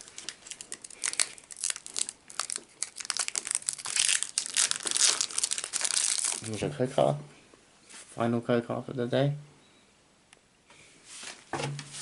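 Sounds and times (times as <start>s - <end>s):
foil wrapper crinkling: 0.0s - 6.6s.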